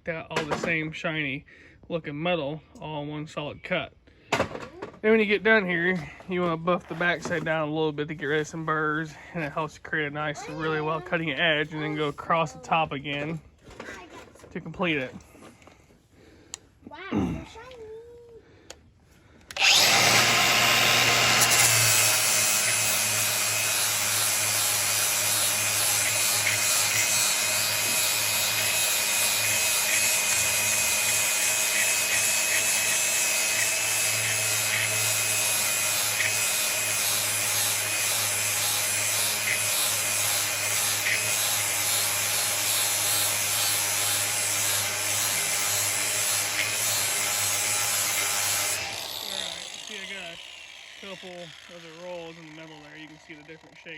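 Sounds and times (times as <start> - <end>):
angle grinder grinding steel: 19.5 - 53.9.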